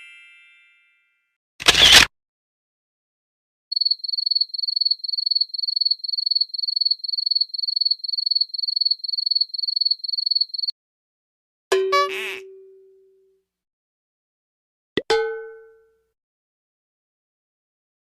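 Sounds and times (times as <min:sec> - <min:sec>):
crickets chirping: 0:03.7 - 0:10.7.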